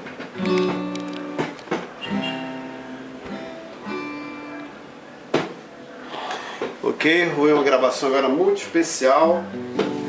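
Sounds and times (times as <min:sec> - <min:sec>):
acoustic guitar strummed: 0:00.0 - 0:05.7, 0:09.2 - 0:10.0.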